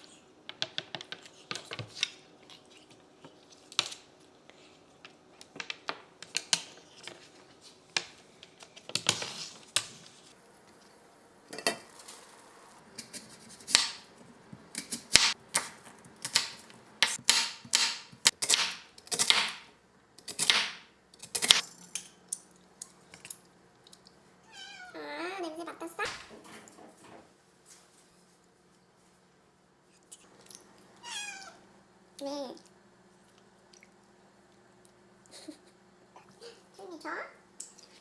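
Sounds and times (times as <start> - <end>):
utensils and dishes clattering: 11.5 - 12.2.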